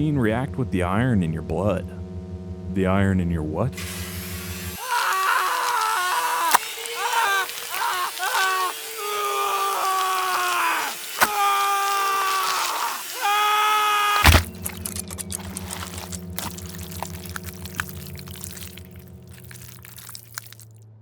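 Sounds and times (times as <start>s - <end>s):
low pulsing hum: 0.0s - 4.8s, 14.3s - 19.9s
long pitched wails: 4.7s - 18.8s
drips and liquid splashes: 4.8s - 20.7s
loud wet crash: 14.2s - 20.6s.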